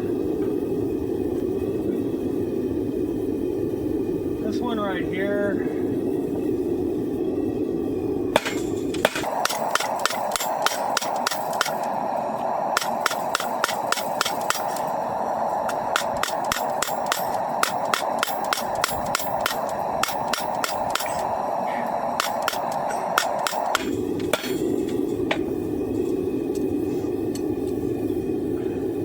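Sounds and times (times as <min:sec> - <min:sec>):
steady hiss: 0:00.0 - 0:29.0
hammer striking steel on anvil: 0:08.4 - 0:11.9, 0:12.8 - 0:15.0, 0:15.6 - 0:21.3, 0:22.1 - 0:25.4.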